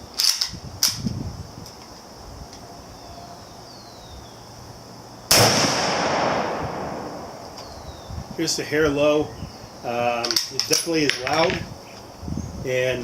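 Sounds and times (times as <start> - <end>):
insect chirring: 0.0 - 13.0
rifle shot: 5.3 - 7.8.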